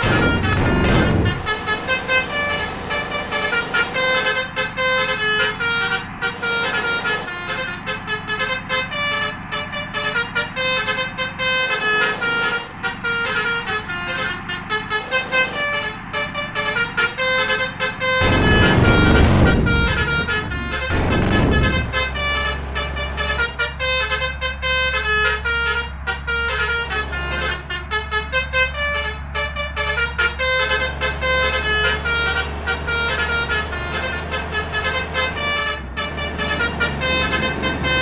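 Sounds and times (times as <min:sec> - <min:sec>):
low rumble: 0:00.0 - 0:03.5, 0:18.2 - 0:23.6
multi-tone bus air horn melody: 0:00.0 - 0:38.0.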